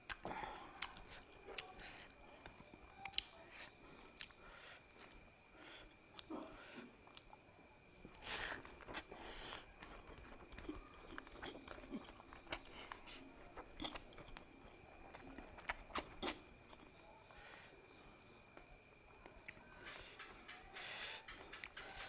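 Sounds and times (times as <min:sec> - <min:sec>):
person chewing food: 0:00.0 - 0:20.6, 0:21.2 - 0:22.0.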